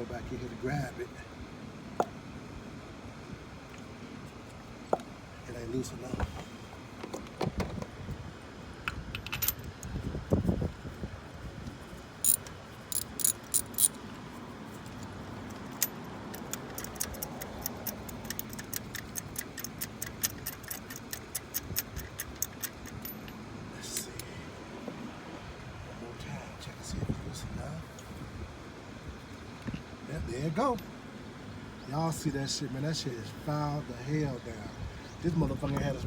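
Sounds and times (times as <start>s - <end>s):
socket ratchet clicking: 12.2s - 13.9s, 15.8s - 23.4s.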